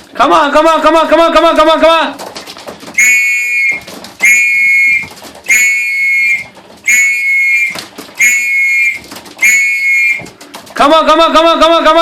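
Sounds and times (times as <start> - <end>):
hand whistle blasts: 3.0 - 10.3.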